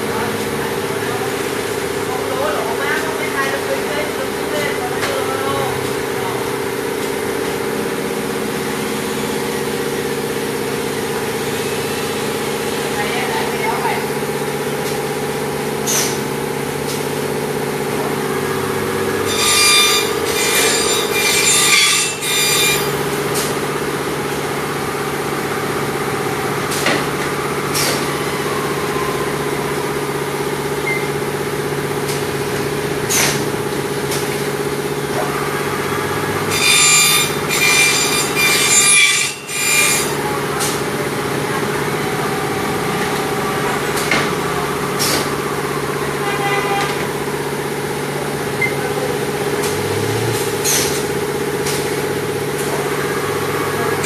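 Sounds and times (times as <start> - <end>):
machine humming: 0.0 - 54.0
high-pitched cutting: 18.5 - 23.7, 35.9 - 41.1.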